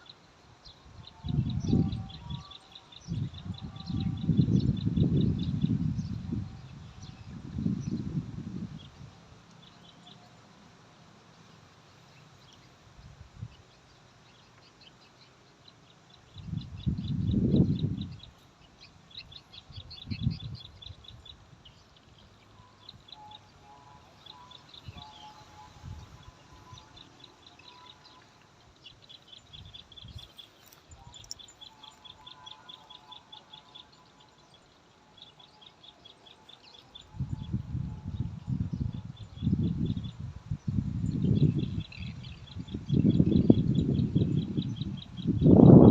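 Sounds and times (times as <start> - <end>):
small birds chirping: 0.0 - 45.9.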